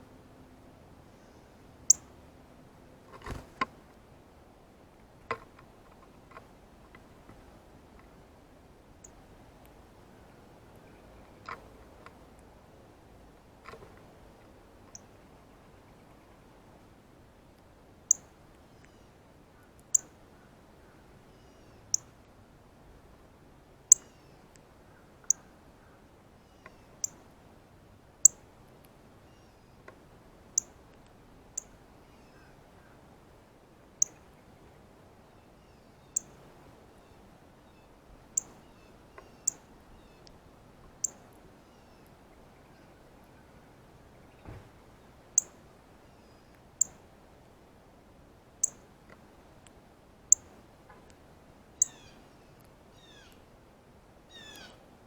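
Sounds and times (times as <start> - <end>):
bird chip calls: 1.9 - 2.1, 30.6 - 30.8, 34.0 - 34.2, 36.0 - 36.4, 38.4 - 40.3, 41.0 - 42.0, 45.4 - 45.6, 51.8 - 52.2, 54.3 - 54.8.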